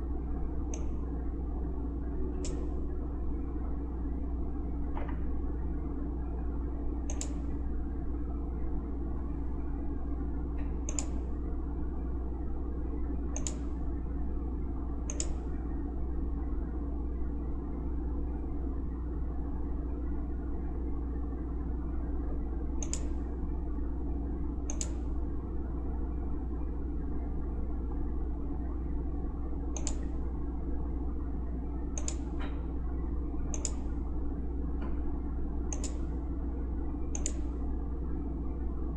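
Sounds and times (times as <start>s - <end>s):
steady low hum: 0.0s - 38.9s
computer mouse clicks: 0.7s - 1.0s, 2.4s - 2.7s, 7.1s - 7.4s, 10.8s - 11.2s, 13.3s - 13.7s, 15.1s - 15.4s, 22.8s - 23.2s, 24.7s - 25.0s, 29.8s - 30.1s, 32.0s - 32.4s, 33.5s - 33.9s, 35.7s - 36.1s, 37.1s - 37.5s.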